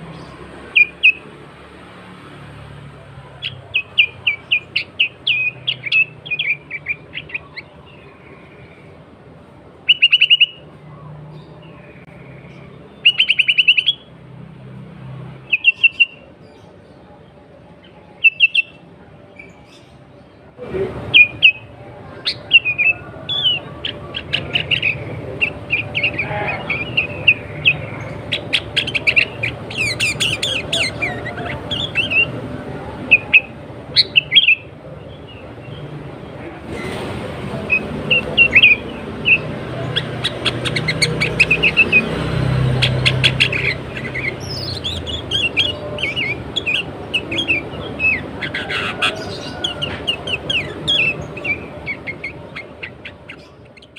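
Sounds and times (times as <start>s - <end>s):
bulbul chirping: 0.0s - 1.3s, 9.8s - 10.6s, 21.1s - 32.4s, 37.6s - 53.9s.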